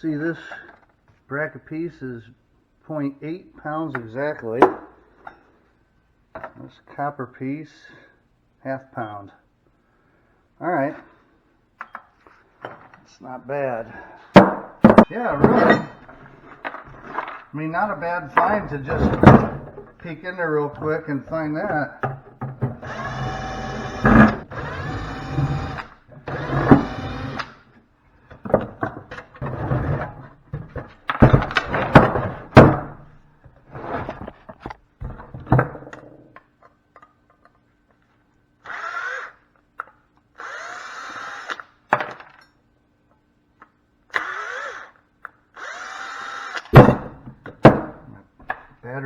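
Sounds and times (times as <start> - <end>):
metal parts clanking: 15.3 - 17.3
cordless drill running: 22.8 - 27.6, 38.6 - 39.4, 40.4 - 41.6, 44.2 - 44.9, 45.6 - 46.7.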